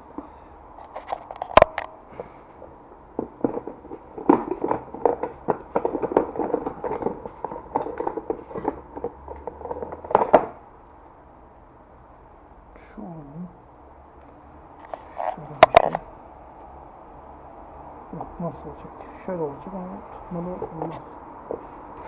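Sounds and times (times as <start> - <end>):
hard objects clattering: 0.2 - 10.6, 14.8 - 16.1.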